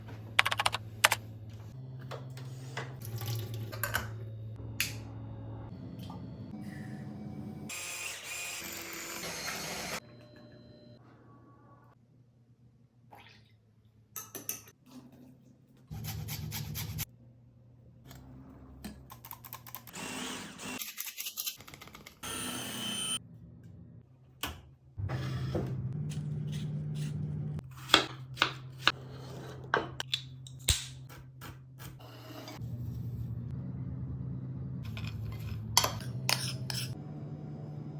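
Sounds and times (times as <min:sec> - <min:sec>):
small kitchen appliance humming: 0:00.9 - 0:11.9, 0:17.6 - 0:20.8, 0:22.2 - 0:30.1, 0:31.4 - 0:37.9.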